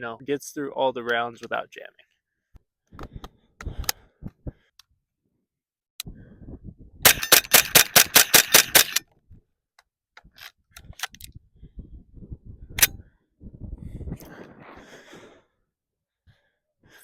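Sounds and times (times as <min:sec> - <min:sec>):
rapid rifle gunshots: 0:07.0 - 0:09.0.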